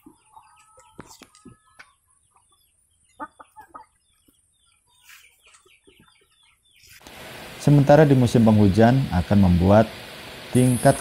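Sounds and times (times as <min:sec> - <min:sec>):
chickens clucking: 0:00.0 - 0:07.2.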